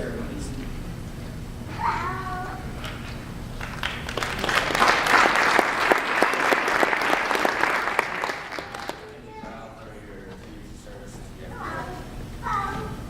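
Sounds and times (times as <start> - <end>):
audience applauding: 2.8 - 9.2.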